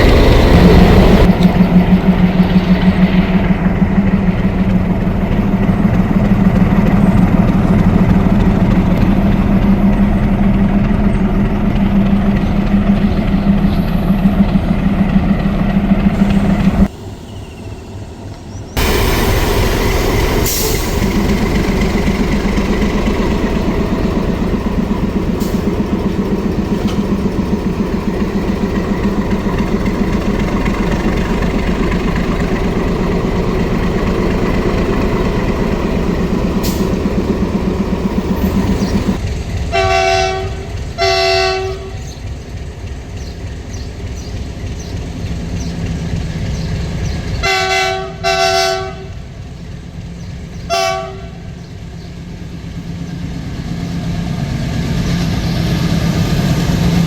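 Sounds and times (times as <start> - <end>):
locomotive engine throbbing: 0.0 - 57.0.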